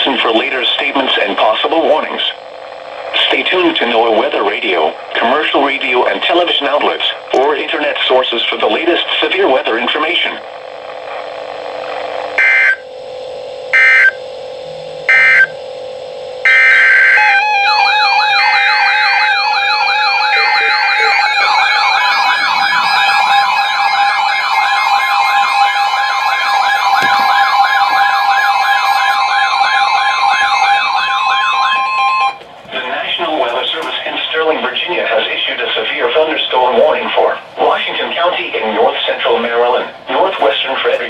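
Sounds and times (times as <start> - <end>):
electronic sirens sweeping: 12.1 - 32.4
steady alert tone: 13.8 - 15.7, 16.4 - 32.4
digital data-burst beeps: 15.1 - 15.6, 16.5 - 27.1.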